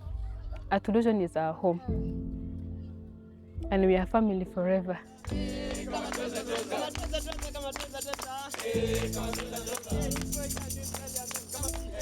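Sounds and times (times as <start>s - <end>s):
low held chords: 0.0s - 12.0s
light steady percussion: 5.0s - 12.0s.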